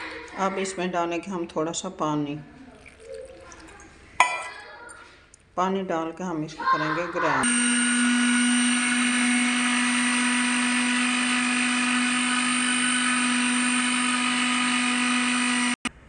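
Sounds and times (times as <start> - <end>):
mixer grinder motor whine: 7.4 - 15.9.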